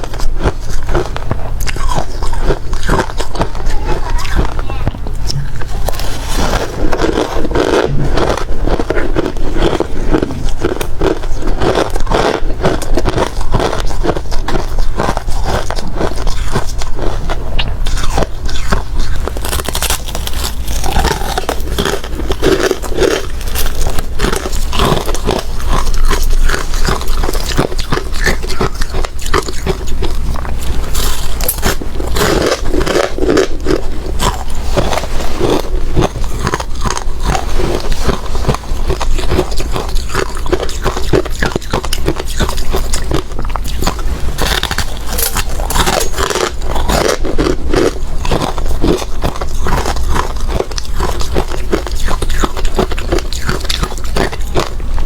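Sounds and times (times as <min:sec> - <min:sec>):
ice crunching being chewed: 0:00.0 - 0:55.0
scraping sounds: 0:03.5 - 0:08.5, 0:19.2 - 0:39.9.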